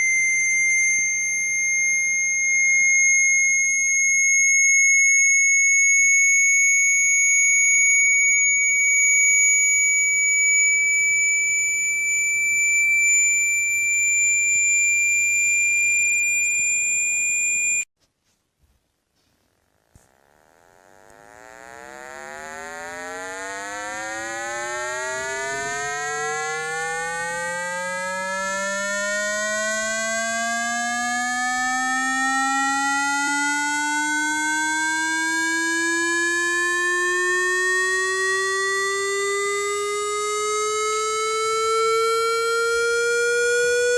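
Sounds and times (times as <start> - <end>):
high-pitched tone: 0.0 - 5.3, 9.3 - 17.9
low buzzy tone: 0.0 - 17.9, 19.5 - 43.9.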